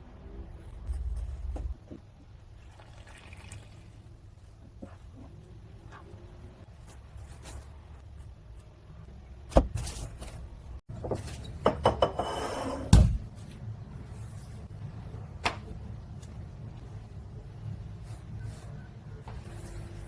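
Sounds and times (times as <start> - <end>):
kitchen knocks and clatters: 10.9 - 13.4.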